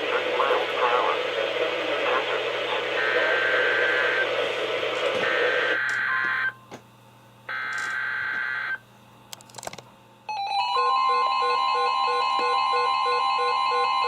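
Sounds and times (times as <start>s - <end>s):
weather radio alarm tone and beeps: 5.3s - 6.6s.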